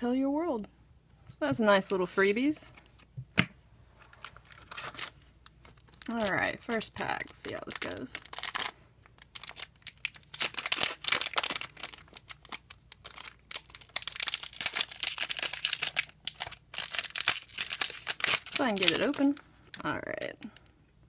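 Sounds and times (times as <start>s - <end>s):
wrapper crinkling and tearing: 4.1s - 19.8s.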